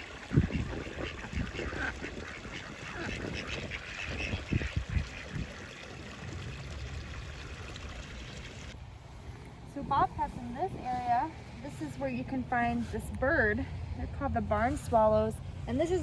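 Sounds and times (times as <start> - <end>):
ducks quacking: 0.0 - 5.9
wind rumble on microphone: 0.0 - 7.4, 8.6 - 16.0.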